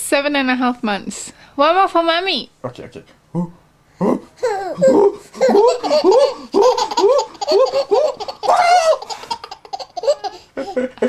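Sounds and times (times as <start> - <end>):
baby laughing: 4.1 - 11.0.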